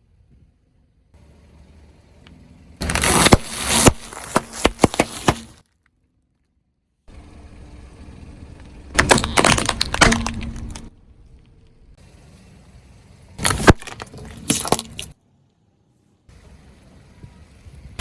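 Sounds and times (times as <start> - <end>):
low steady rumble: 0.0 - 4.6, 7.1 - 15.2
tyre crushing brittle objects: 2.8 - 5.9, 9.0 - 10.9, 13.4 - 15.2.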